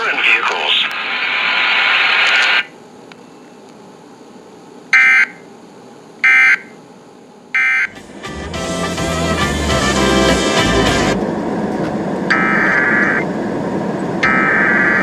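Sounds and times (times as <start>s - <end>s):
rush of radio noise: 0.0s - 2.7s, 11.8s - 13.3s, 14.2s - 15.0s
warbling data chirps: 12.3s - 13.3s.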